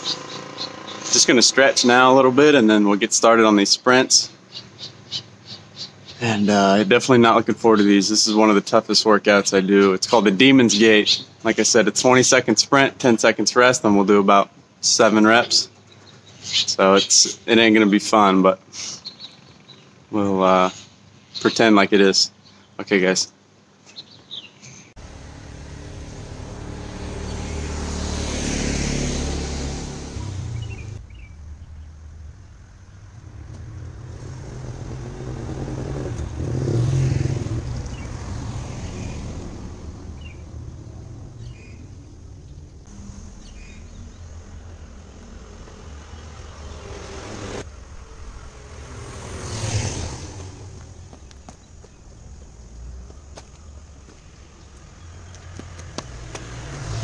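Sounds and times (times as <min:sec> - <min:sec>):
cars passing: 0:00.0 - 0:03.5, 0:25.0 - 0:57.0
low steady traffic rumble: 0:00.0 - 0:57.0.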